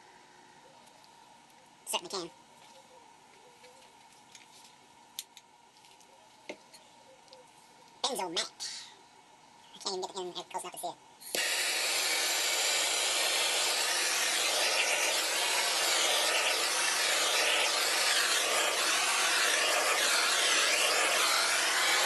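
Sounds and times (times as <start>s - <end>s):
hot-air blower rushing air: 11.3s - 22.0s.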